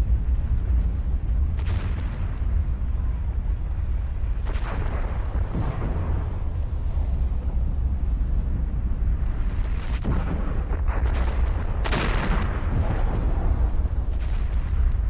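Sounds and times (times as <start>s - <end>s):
deep volcanic rumble: 0.0s - 15.0s
explosive blasts: 4.3s - 8.0s, 9.2s - 15.0s.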